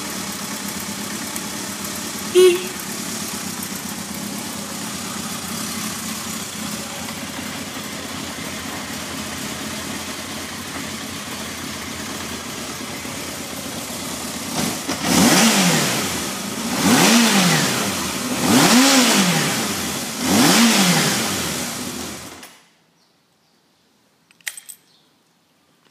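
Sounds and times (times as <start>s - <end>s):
motorcycle engine idling and revving: 0.0s - 22.6s.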